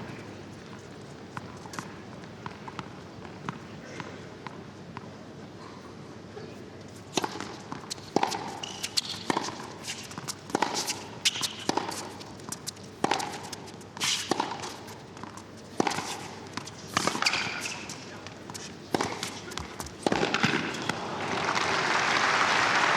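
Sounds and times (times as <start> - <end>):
tennis ball hit by rackets: 7.2 - 21.7.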